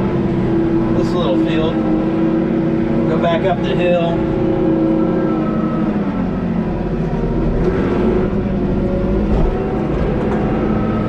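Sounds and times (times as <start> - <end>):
tractor engine running: 6.0 - 11.0.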